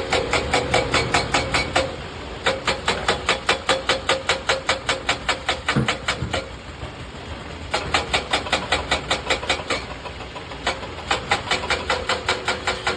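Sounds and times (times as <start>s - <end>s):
machine rhythmic knocking: 2.6s - 9.8s, 10.6s - 12.9s.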